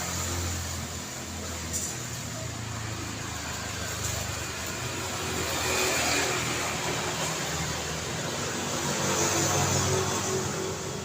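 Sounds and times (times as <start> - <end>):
car engines: 0.0 - 11.0.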